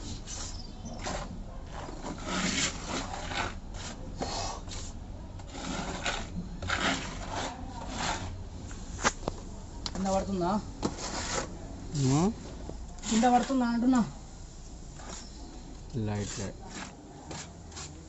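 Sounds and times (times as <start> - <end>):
blade scraping putty on wall: 0.3 - 8.4, 10.8 - 11.5, 13.0 - 14.0, 16.2 - 18.0.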